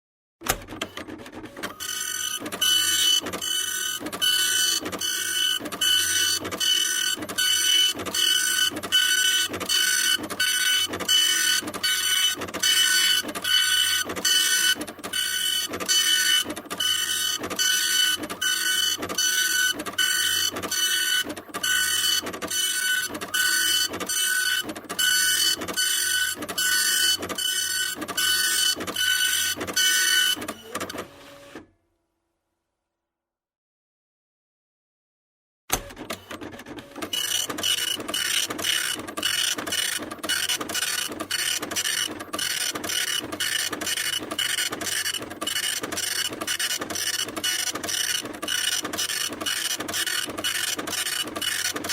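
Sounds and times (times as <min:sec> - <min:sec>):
printer mechanical whine: 0:00.4 - 0:31.6, 0:35.7 - 0:51.9
printer clicking: 0:35.7 - 0:51.9.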